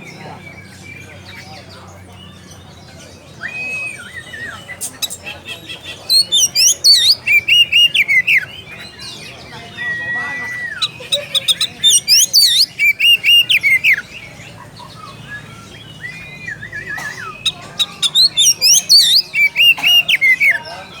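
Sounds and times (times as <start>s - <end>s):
bird singing whistled notes: 0.1s - 21.0s.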